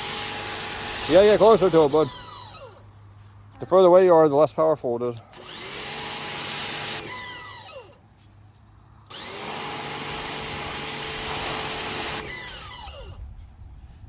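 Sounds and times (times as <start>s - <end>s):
pressure washer spraying: 0.0s - 2.6s, 9.2s - 13.0s.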